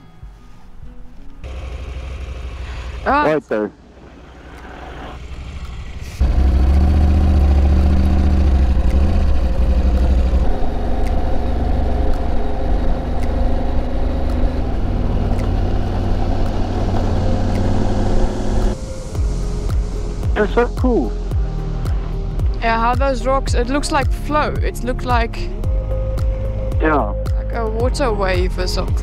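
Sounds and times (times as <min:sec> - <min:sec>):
motorcycle engine running: 0:01.4 - 0:19.9.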